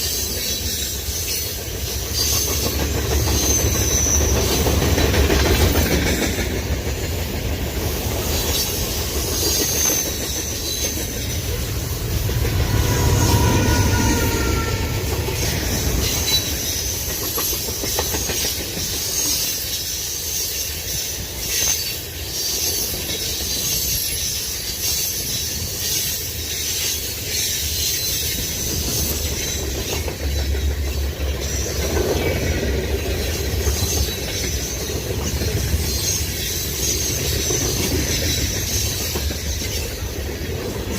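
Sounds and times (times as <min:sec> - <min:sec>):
freight train cars rumbling: 0:00.0 - 0:40.9
high-pitched wheel squeal: 0:02.1 - 0:04.7, 0:08.4 - 0:17.2.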